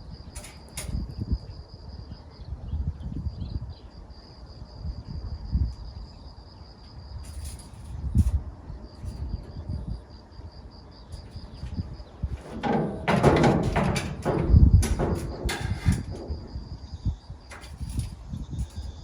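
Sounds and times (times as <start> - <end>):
insects trilling: 0.0 - 19.0
handling thumps: 11.2 - 16.8.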